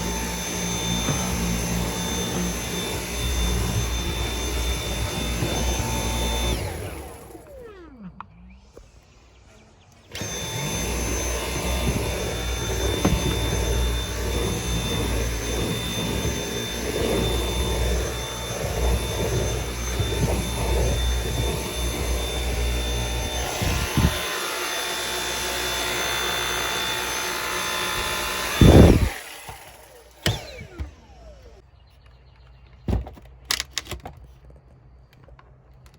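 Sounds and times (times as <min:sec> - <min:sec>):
nozzle rubbing over carpet: 0:00.0 - 0:07.1, 0:08.8 - 0:29.2
vacuum cleaner whining: 0:00.0 - 0:31.6.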